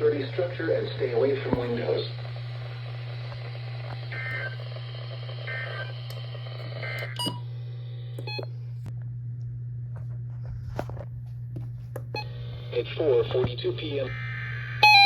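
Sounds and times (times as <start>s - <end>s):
radio hiss: 0.0s - 7.2s, 12.2s - 15.0s
steady low hum: 0.0s - 15.0s
short electronic beeps: 7.1s - 7.4s.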